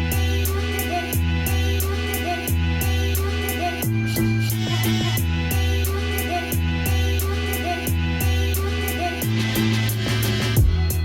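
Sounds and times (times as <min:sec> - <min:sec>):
pop instrumental music: 0:00.0 - 0:11.0.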